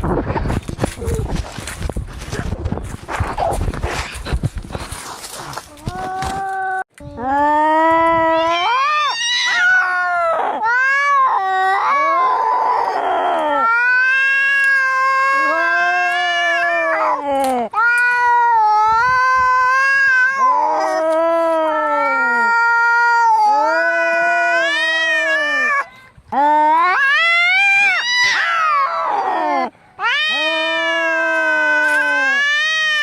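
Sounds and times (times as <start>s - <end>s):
cats yowling in a fight: 8.2s - 33.0s.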